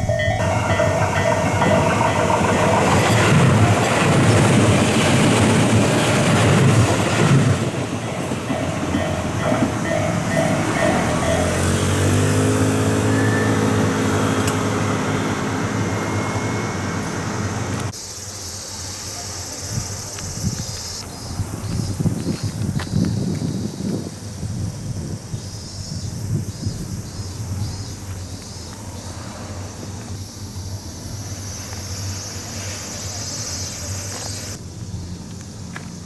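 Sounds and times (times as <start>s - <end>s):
crossing warning alarm tones: 0.0s - 17.9s
train wheels rumbling on rail: 0.0s - 18.0s, 18.8s - 36.0s
quiet outdoor background: 0.0s - 36.0s
steady tones rising in pitch: 8.0s - 17.9s.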